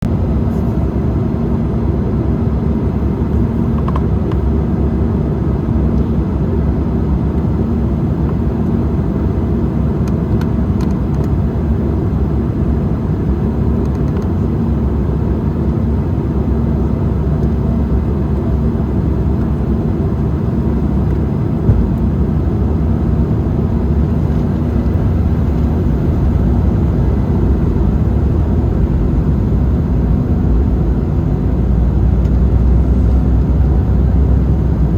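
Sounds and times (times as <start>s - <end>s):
airliner engine drone: 0.0s - 34.9s
low hum: 19.3s - 34.9s
rushing airflow: 21.5s - 29.6s
brief thump: 21.6s - 22.2s.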